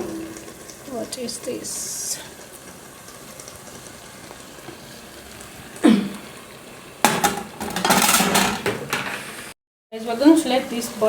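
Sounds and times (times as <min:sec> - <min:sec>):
stew simmering in a pot: 0:00.0 - 0:11.0.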